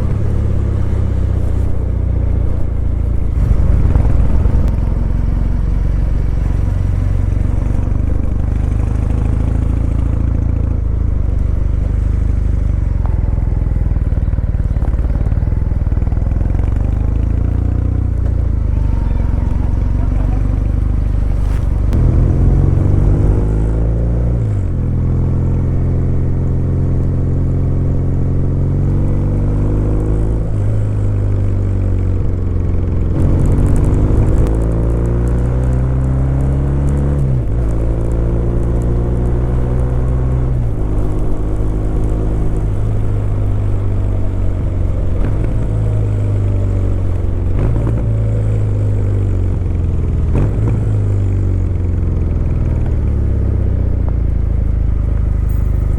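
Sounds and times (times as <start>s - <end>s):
motorcycle engine and exhaust: 0.0s - 55.9s.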